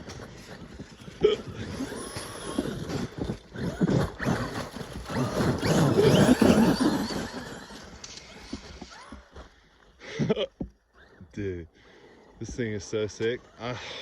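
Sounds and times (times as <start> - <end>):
paddle tyres churning snow: 0.0 - 10.4
electric motor whining: 1.5 - 9.3.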